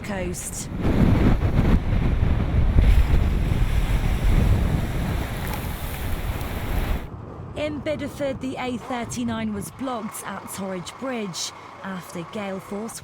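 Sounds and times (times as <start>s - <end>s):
storm waves crashing: 0.0s - 7.1s
wind buffeting microphone: 0.0s - 8.4s.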